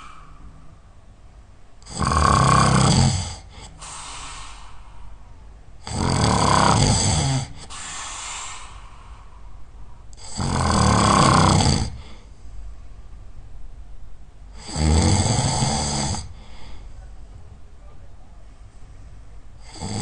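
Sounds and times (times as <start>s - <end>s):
soft breath: 0.0s - 0.8s, 3.4s - 5.5s, 7.4s - 10.1s, 11.9s - 13.1s, 16.2s - 17.4s
person snoring loudly: 1.8s - 3.5s, 5.8s - 8.0s, 10.2s - 12.0s, 14.6s - 16.4s, 19.6s - 20.0s.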